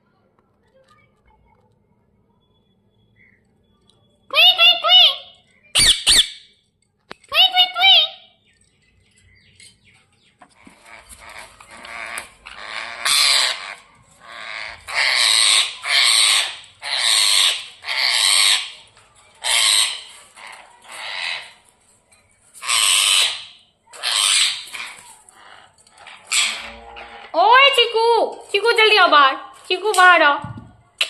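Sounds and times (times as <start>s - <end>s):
parrot squawking harshly: 4.4s - 6.5s, 10.8s - 18.8s, 19.4s - 21.6s, 22.6s - 26.8s.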